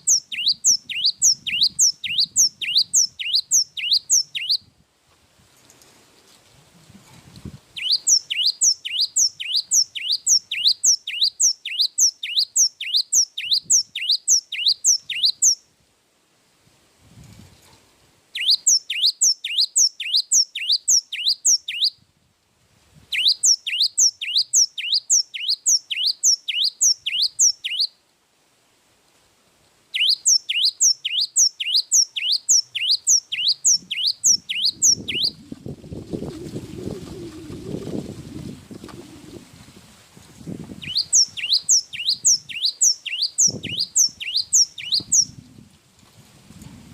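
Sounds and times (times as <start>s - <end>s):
bird whistled song: 0.0s - 4.7s, 7.8s - 15.6s, 18.4s - 22.0s, 23.1s - 28.0s, 29.9s - 35.4s, 40.8s - 45.4s.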